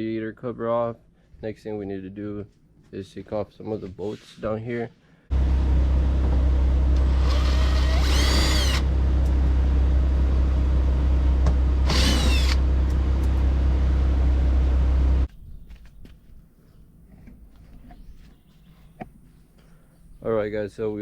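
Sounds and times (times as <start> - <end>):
loud low hum: 5.3 - 15.3
power tool whining: 5.3 - 15.3.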